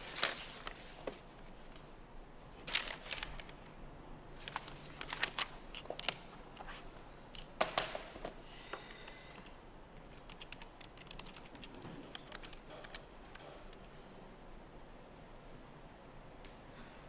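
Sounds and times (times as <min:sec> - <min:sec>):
small clicks and rustles at desk: 0:00.0 - 0:01.9, 0:02.6 - 0:03.8, 0:04.4 - 0:14.1.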